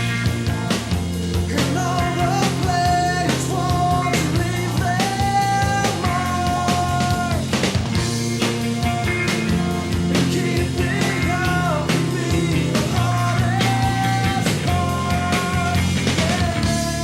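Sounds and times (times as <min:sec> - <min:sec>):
rock band playing: 0:00.0 - 0:17.0
person singing: 0:01.5 - 0:17.0.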